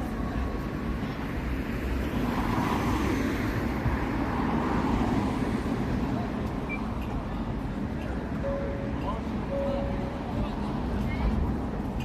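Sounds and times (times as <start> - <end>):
low rumble of vehicles: 0.0 - 12.0.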